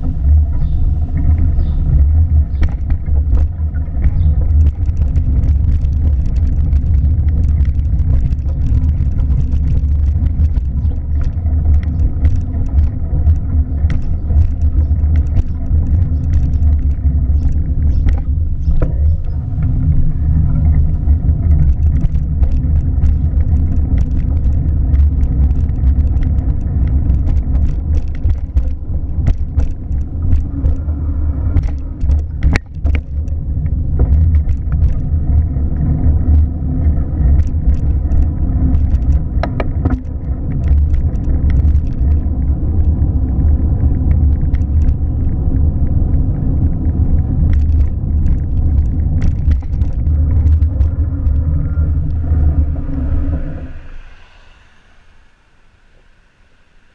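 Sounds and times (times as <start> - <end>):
light clicks and knocks: 0.0 - 19.9, 20.6 - 46.0
car rumbling in motion: 0.0 - 56.9.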